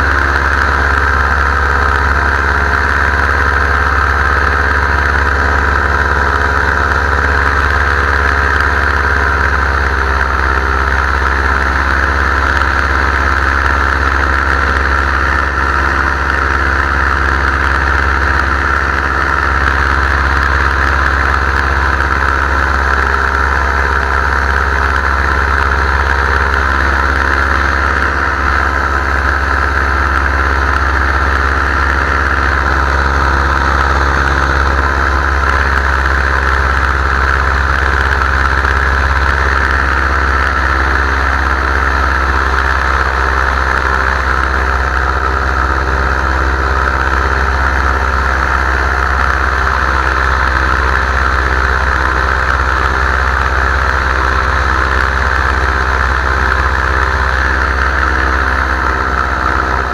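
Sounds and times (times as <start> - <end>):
paramotor engine and propeller: 0.0 - 59.9.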